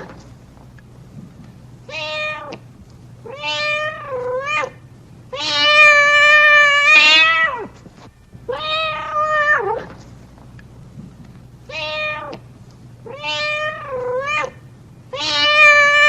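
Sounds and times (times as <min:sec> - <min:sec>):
cat meowing: 0:01.9 - 0:02.6, 0:03.2 - 0:07.7, 0:08.5 - 0:09.9, 0:11.7 - 0:12.4, 0:13.0 - 0:16.0.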